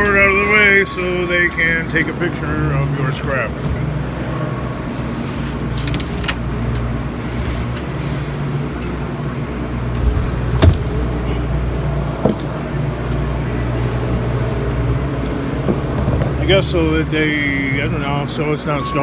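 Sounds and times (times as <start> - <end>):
sharp knocks: 10.0 - 11.0.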